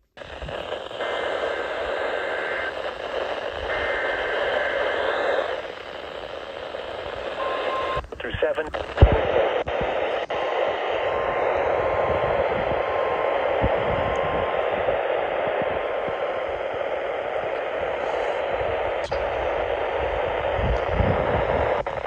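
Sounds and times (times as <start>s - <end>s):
radio static hiss: 0.0s - 22.0s
faint steady tone: 0.6s - 8.9s.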